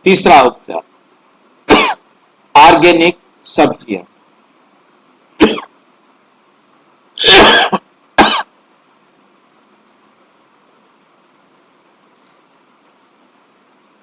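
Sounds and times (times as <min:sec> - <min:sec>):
person coughing: 0:01.7 - 0:02.0, 0:05.4 - 0:05.7, 0:07.2 - 0:08.5.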